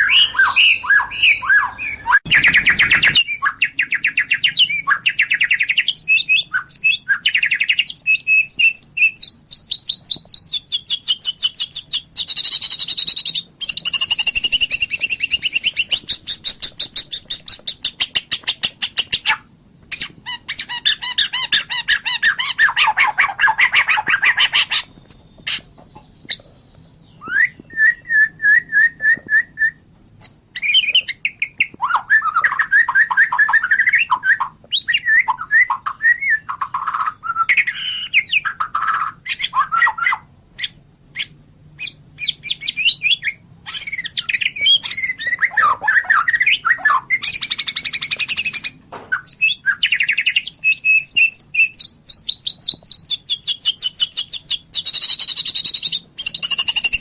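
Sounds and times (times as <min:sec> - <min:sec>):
songbird singing varied song: 0:00.0 - 0:57.0.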